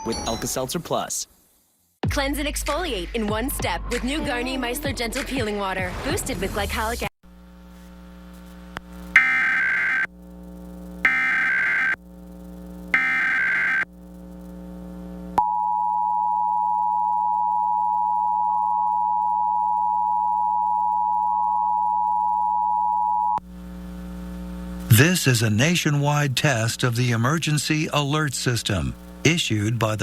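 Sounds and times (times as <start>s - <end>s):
warbling data bursts: 9.0s - 14.9s
steady two-tone beep: 9.2s - 10.1s, 11.1s - 12.0s, 13.0s - 13.8s.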